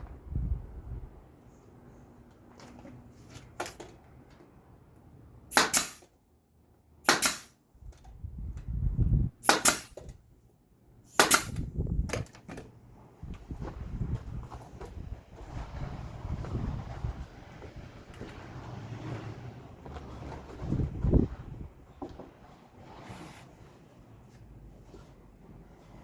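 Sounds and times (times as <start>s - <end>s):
brad nailer shots: 5.5s - 6.2s, 7.0s - 7.6s, 9.4s - 10.2s, 11.1s - 11.7s.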